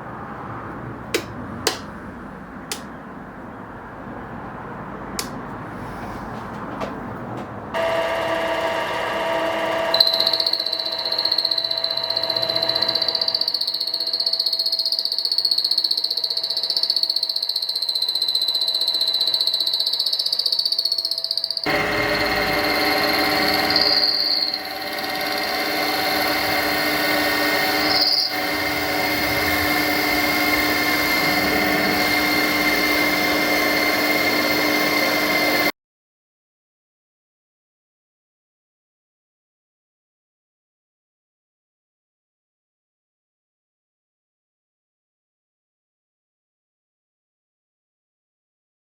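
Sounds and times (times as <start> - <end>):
angle grinder screeching on metal: 7.8 - 35.7
steady machine hum: 7.8 - 35.7.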